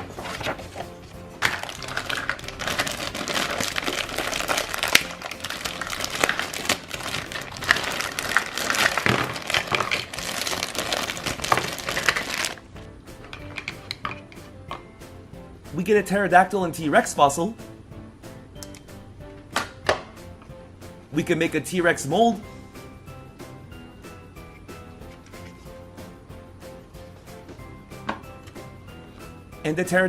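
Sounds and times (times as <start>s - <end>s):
toy packaging crinkling: 0.0s - 12.6s
background music: 0.0s - 30.0s.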